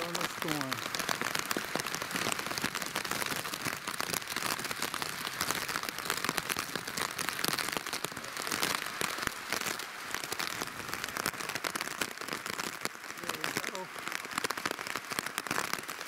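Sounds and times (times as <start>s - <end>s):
heavy rain: 0.0s - 16.0s.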